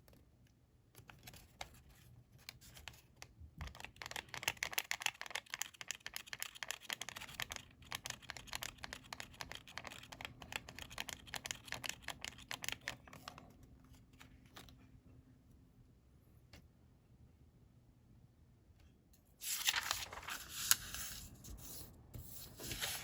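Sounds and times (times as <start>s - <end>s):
paper crinkling and rustling: 19.4s - 23.0s.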